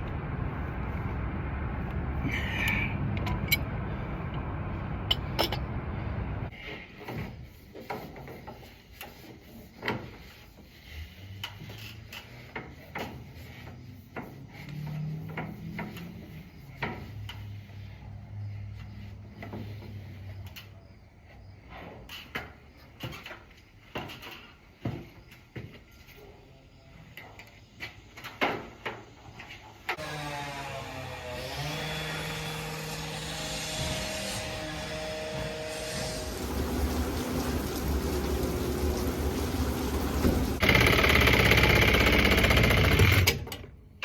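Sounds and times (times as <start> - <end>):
steady low running noise: 0.0 - 6.5.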